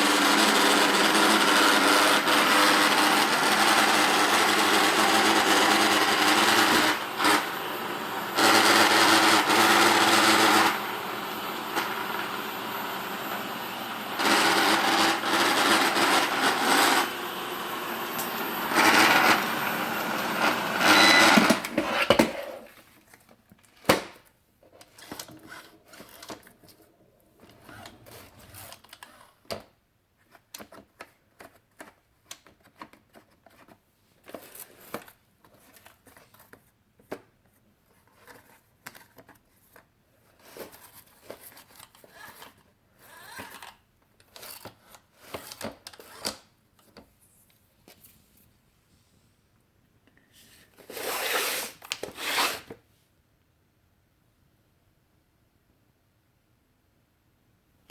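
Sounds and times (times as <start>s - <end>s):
robot vacuum motor whir: 0.0s - 22.7s, 27.4s - 29.2s, 41.6s - 43.7s, 50.8s - 52.7s.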